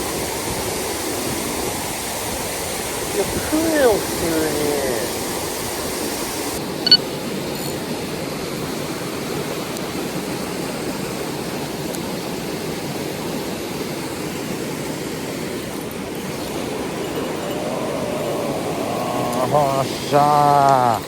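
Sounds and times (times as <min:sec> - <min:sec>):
mountain stream rushing: 0:00.0 - 0:21.0.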